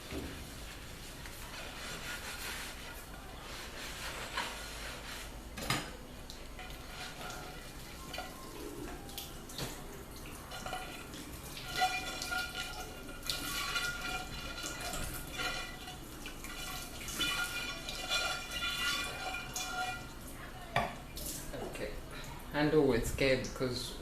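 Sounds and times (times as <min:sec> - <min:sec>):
sponge scrubbing: 0:00.3 - 0:05.4
water running and dripping: 0:06.2 - 0:22.6.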